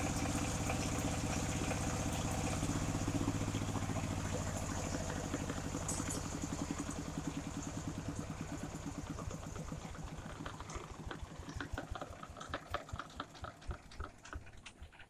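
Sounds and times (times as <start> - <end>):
sawmill engine idling: 0.0 - 15.0.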